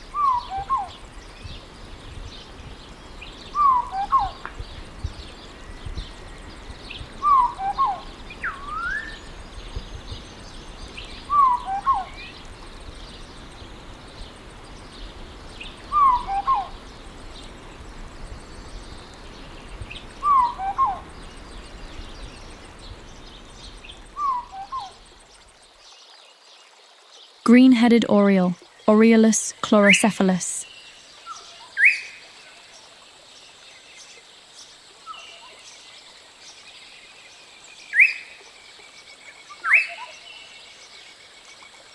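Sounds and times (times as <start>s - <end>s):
faint birds calling: 0.0s - 25.0s.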